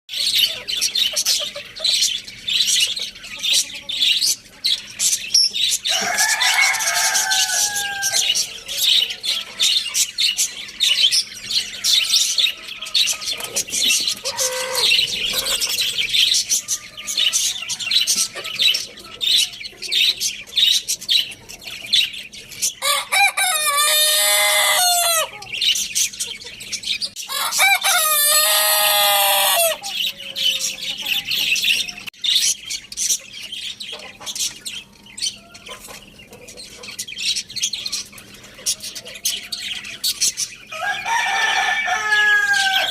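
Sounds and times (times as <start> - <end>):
small birds chirping: 0.1 - 42.9
rooster crowing: 5.9 - 9.4, 14.2 - 15.6, 22.8 - 25.5, 27.2 - 30.9, 40.7 - 42.9.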